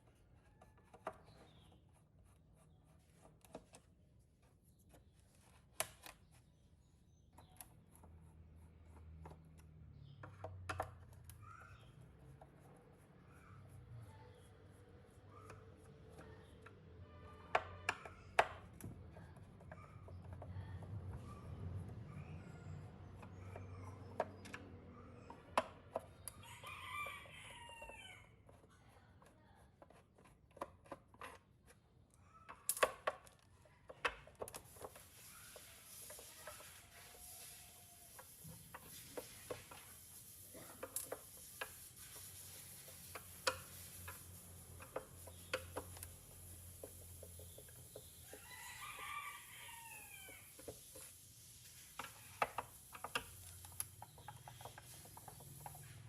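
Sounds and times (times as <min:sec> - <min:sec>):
rooster crowing: 0:26.4 - 0:28.3, 0:48.3 - 0:50.6.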